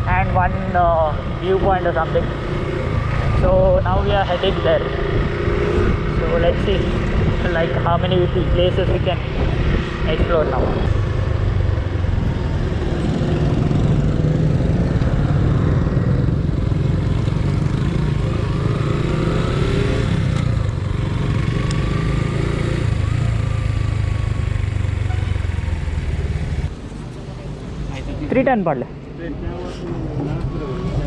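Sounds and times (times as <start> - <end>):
motorcycle engine running: 9.2 - 26.7.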